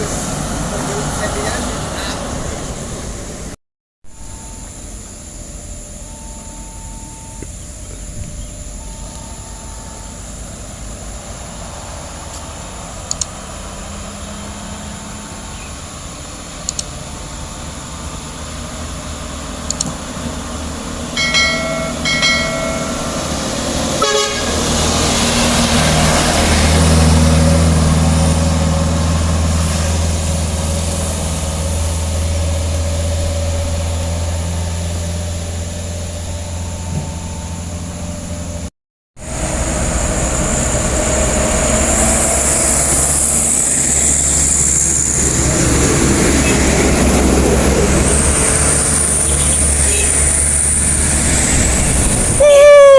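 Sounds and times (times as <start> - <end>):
truck diesel engine passing: 0.0 - 3.6, 4.3 - 52.9
vehicle horn tooting: 23.9 - 25.0, 49.3 - 50.4.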